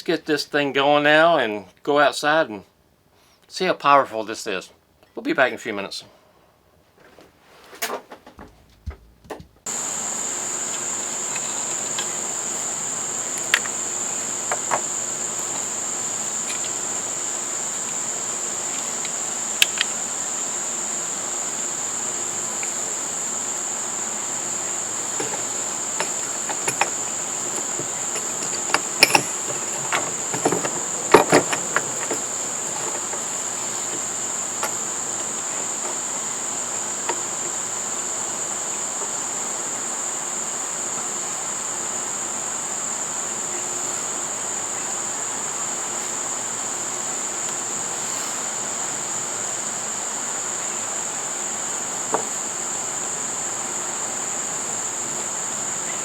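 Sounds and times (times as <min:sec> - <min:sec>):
high-pitched insect chorus: 0:09.7 - 0:56.0
clicks and knocks from handling: 0:25.1 - 0:34.8.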